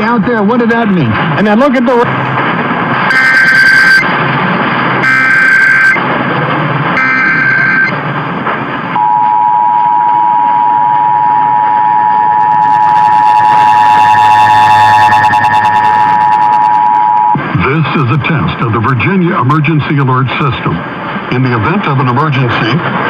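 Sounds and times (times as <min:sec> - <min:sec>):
digital data bursts: 0:03.1 - 0:04.1, 0:05.0 - 0:06.0, 0:07.0 - 0:08.0
two-tone attention signal: 0:03.1 - 0:04.1, 0:05.0 - 0:06.0, 0:07.0 - 0:08.0, 0:09.0 - 0:17.4.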